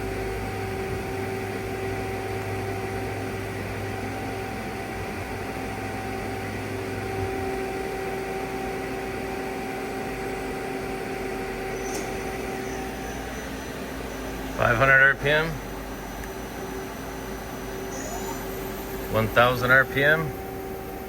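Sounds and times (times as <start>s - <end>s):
lathe machine hum: 0.0s - 21.0s
faint high whine: 11.1s - 21.0s.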